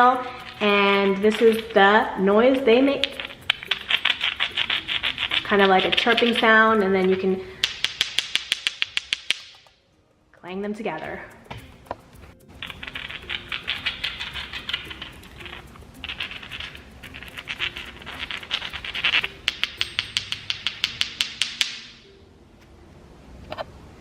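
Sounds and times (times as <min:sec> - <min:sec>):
stones rubbed together clattering: 0:00.0 - 0:01.9, 0:02.5 - 0:08.6, 0:12.4 - 0:21.0
stones tapped together clicking: 0:12.6 - 0:21.9.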